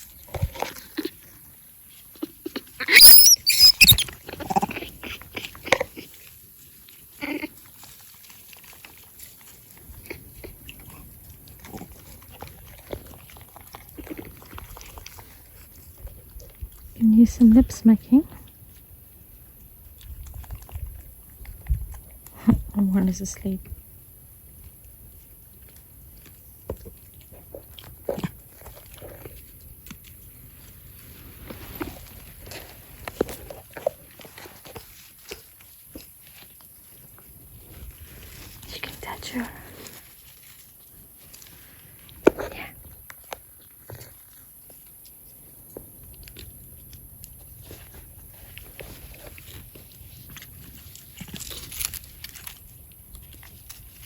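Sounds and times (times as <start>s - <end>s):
monkeys squealing: 2.8s - 4.1s.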